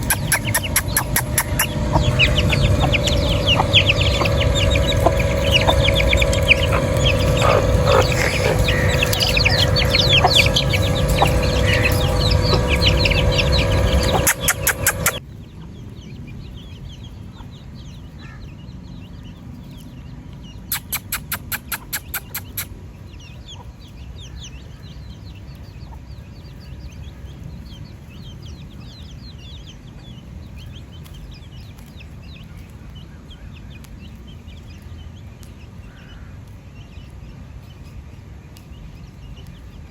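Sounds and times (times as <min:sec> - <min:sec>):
sharp clicks: 0:00.0 - 0:15.2
steady hum: 0:00.0 - 0:15.2
chickens clucking and peeping: 0:00.0 - 0:39.9.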